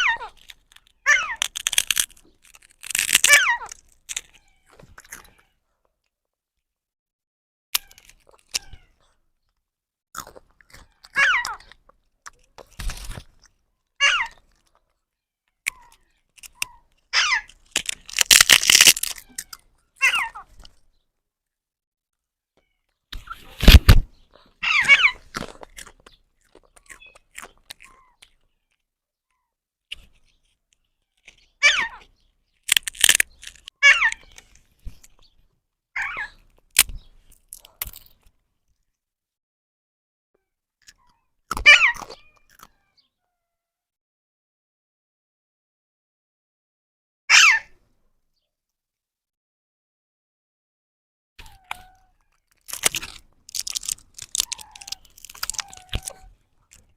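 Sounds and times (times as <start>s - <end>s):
crunching clicks: 0.3s - 5.3s, 7.7s - 8.8s, 15.5s - 19.7s, 24.8s - 28.8s, 32.6s - 35.3s, 36.4s - 38.3s, 51.7s - 56.9s
parrot squawk: 14.0s - 14.4s, 17.2s - 17.5s, 24.6s - 25.2s, 33.8s - 34.2s, 47.3s - 47.7s
parrot chicks squawking: 24.6s - 25.3s, 53.6s - 56.4s
sharp clicks: 32.6s - 33.7s.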